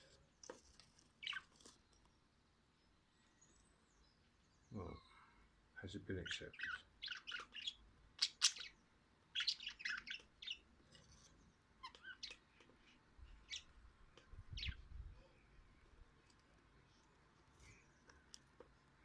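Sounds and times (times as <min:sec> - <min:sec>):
budgerigars chirping and squawking: 0:01.2 - 0:01.5, 0:06.2 - 0:13.8, 0:14.4 - 0:14.8.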